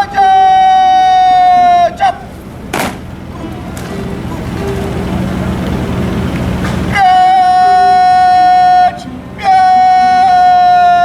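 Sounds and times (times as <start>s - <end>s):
person shouting command: 0.0s - 2.3s.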